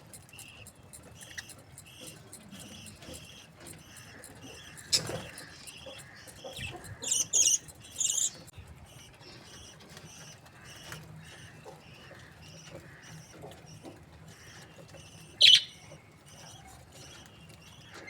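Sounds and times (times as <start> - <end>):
budgerigars chirping: 0.1 - 18.0
shrill bird calls: 2.7 - 8.4, 15.4 - 15.8.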